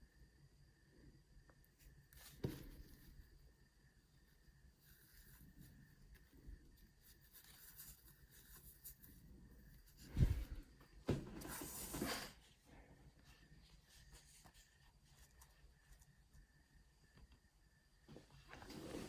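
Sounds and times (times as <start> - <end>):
hands rubbing and handling objects: 4.4 - 12.4, 13.2 - 16.4.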